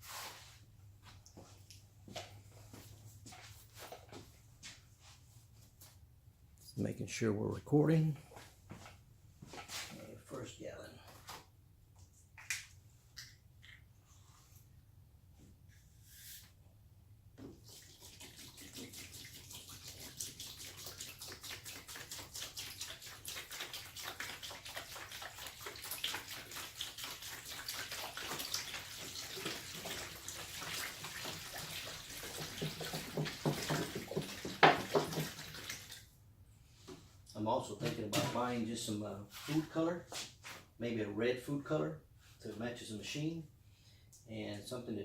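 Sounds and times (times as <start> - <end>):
water pouring into tank: 17.6 - 36.1.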